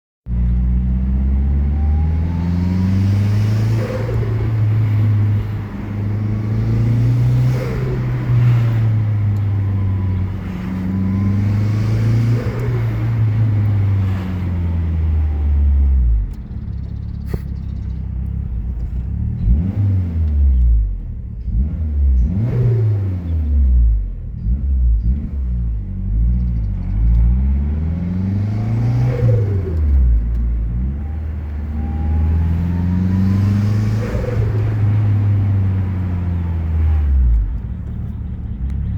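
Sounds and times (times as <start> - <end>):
car engine revving: 0.3 - 38.9.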